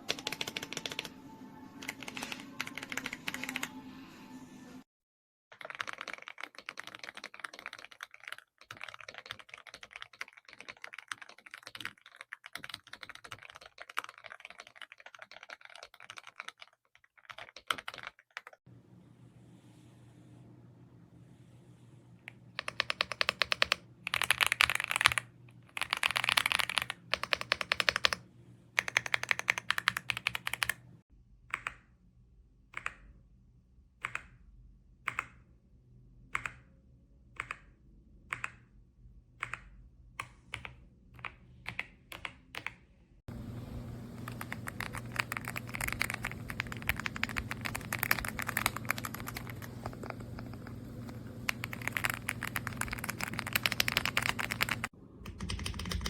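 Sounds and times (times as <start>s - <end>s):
typing on mechanical keyboard: 0.0s - 1.1s, 1.8s - 3.8s, 5.6s - 18.6s, 22.5s - 28.2s, 28.8s - 30.8s, 44.2s - 56.0s.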